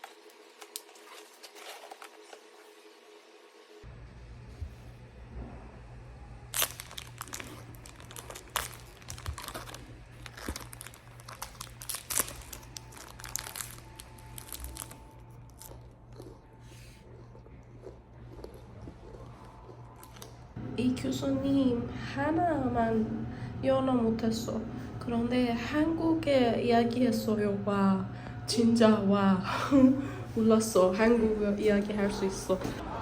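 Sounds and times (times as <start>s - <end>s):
crinkling handling noise: 0.0s - 2.8s, 6.5s - 16.4s
low hum: 3.6s - 33.0s.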